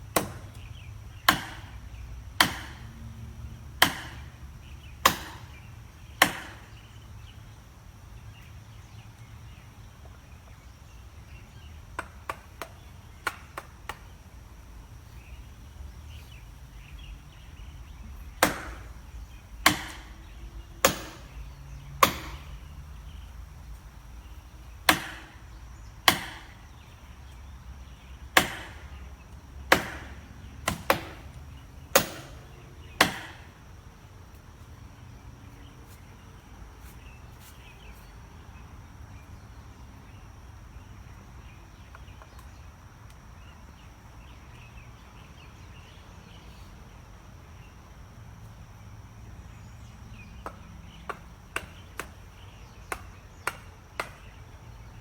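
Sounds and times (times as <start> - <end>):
sharp chopping strikes: 0.2 - 1.8, 2.4 - 2.9, 3.8 - 4.3, 5.0 - 5.6, 6.2 - 6.8, 18.4 - 19.0, 19.6 - 21.4, 22.0 - 22.6, 24.8 - 25.4, 26.0 - 26.6, 28.4 - 29.0, 29.7 - 33.5, 51.1 - 52.2, 52.9 - 54.3.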